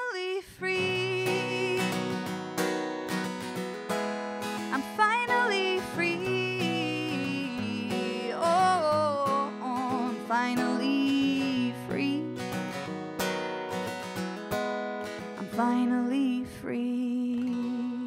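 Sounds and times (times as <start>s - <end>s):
acoustic guitar strummed and picked: 0.0s - 18.0s.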